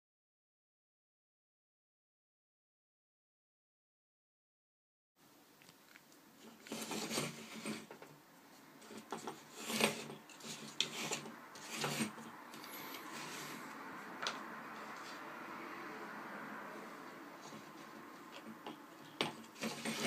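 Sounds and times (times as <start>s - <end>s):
faint steady hiss: 5.2s - 19.9s
rubbing and scraping handling noise: 5.6s - 15.5s, 16.8s - 20.0s.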